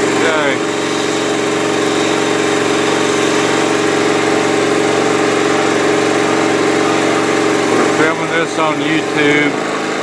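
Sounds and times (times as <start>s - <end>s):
pressure washer engine running: 0.0s - 10.0s
water spray hiss: 0.4s - 4.5s.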